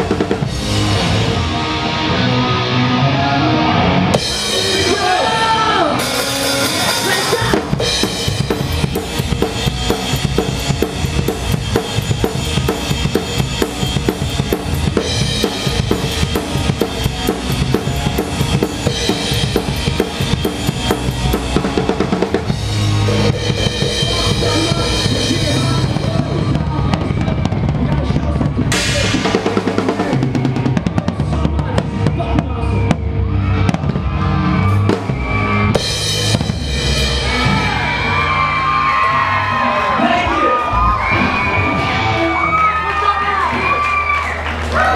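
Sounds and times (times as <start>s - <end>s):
rock band playing live: 0.0s - 44.9s
drum kit hits: 28.7s - 31.0s.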